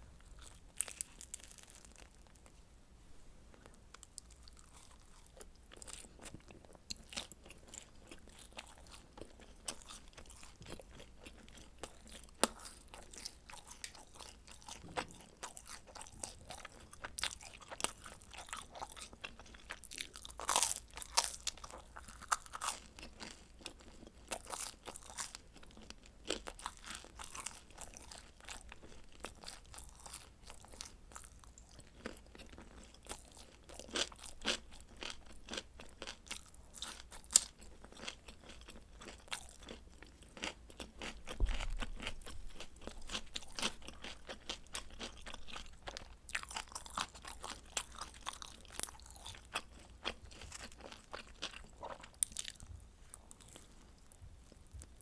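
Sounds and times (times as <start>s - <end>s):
crunchy pizza chewing: 0.2s - 2.6s, 3.6s - 55.0s
low thump: 41.3s - 41.8s.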